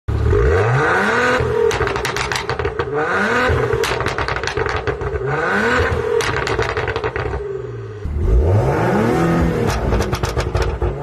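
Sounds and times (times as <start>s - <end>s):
car engine revving: 0.1s - 11.0s
exhaust crackles and pops: 1.6s - 7.4s, 9.6s - 11.0s.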